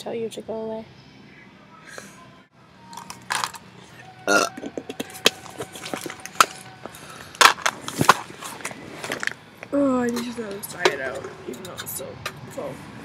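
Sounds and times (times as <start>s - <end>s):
girl burping: 4.3s - 4.7s.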